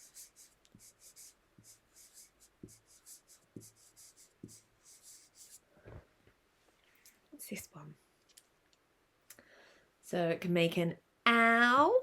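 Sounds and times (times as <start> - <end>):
scratchy writing strokes: 0.0 - 5.6.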